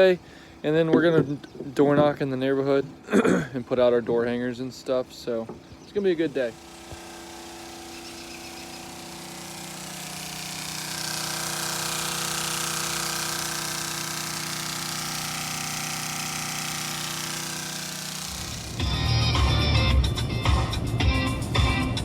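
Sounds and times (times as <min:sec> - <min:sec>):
engine running: 0:05.2 - 0:20.1.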